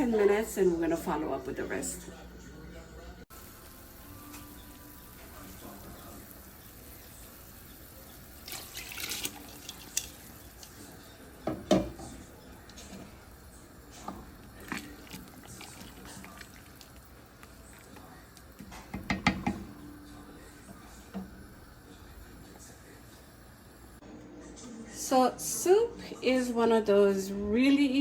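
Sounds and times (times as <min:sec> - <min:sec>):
water running from tap: 0:03.4 - 0:19.8.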